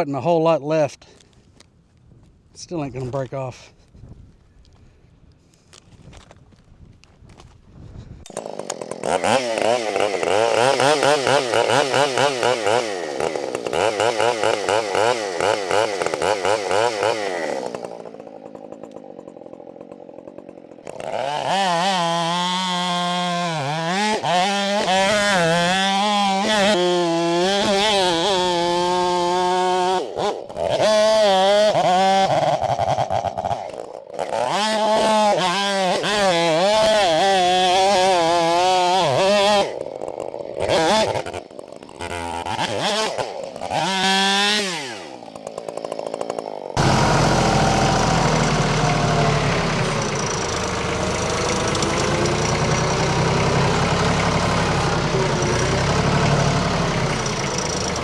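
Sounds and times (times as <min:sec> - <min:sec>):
chainsaw cutting log: 0:05.5 - 0:58.0.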